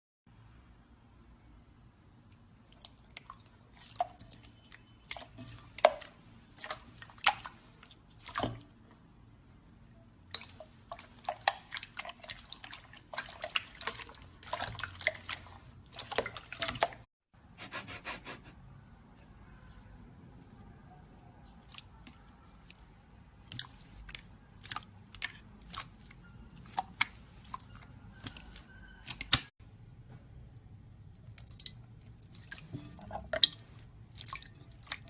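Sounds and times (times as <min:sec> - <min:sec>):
slime squishing wet clicks: 0:02.7 - 0:08.7, 0:21.4 - 0:29.5.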